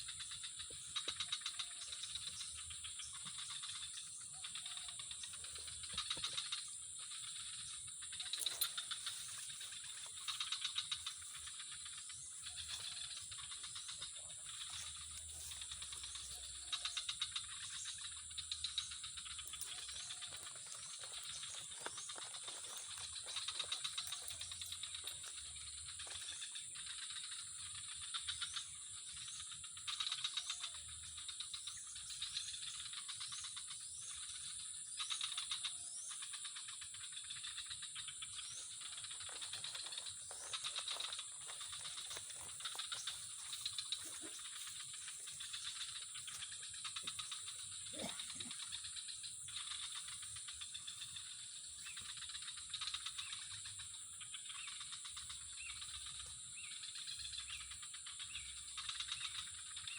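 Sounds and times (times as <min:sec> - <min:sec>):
high-pitched insect drone: 0:00.0 - 0:59.9.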